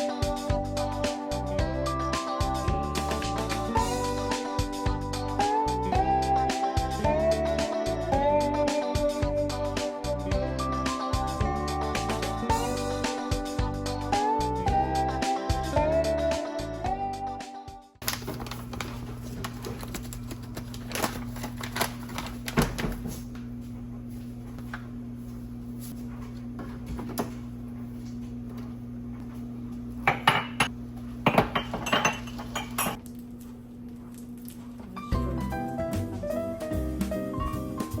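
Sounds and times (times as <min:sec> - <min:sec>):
dishes and cutlery clinking: 0:30.1 - 0:30.7, 0:31.3 - 0:33.0.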